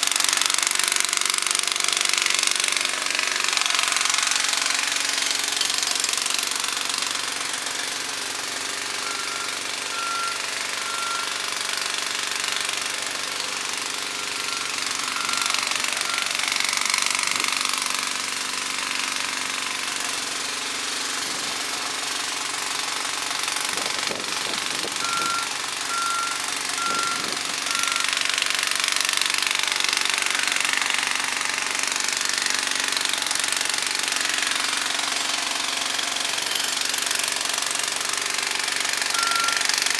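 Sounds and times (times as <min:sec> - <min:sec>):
heavy equipment engines running: 0:00.0 - 0:39.9
jackhammer hammering: 0:00.0 - 0:39.9
beeping alarm: 0:09.0 - 0:11.4, 0:14.0 - 0:16.4, 0:24.4 - 0:28.3, 0:39.1 - 0:39.7.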